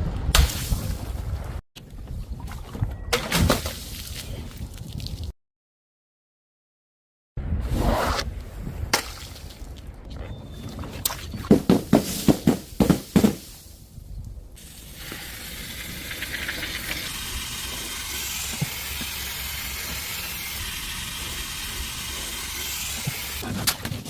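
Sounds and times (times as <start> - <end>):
steady hiss: 14.6 - 23.4.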